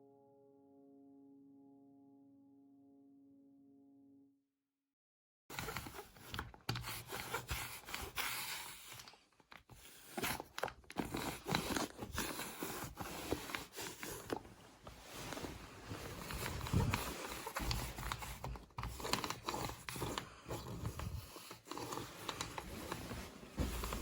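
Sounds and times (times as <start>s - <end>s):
rustling with light clicks: 5.5s - 24.0s.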